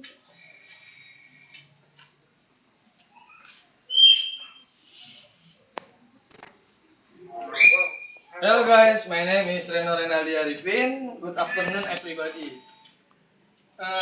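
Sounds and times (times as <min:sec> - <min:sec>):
canary whistling: 0:03.2 - 0:04.7, 0:07.4 - 0:08.4, 0:11.4 - 0:12.8
canary call: 0:07.3 - 0:08.4.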